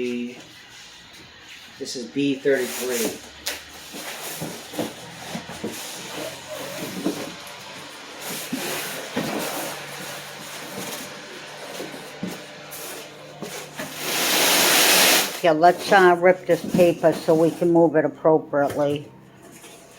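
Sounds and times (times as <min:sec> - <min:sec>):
packing paper rustling: 0:02.5 - 0:17.8.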